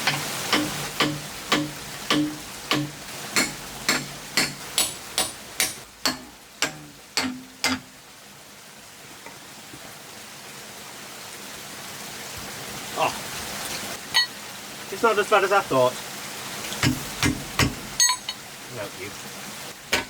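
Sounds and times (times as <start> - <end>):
hammer striking steel chisel: 0.0 - 7.9, 16.8 - 18.4
steady hiss: 0.0 - 20.0.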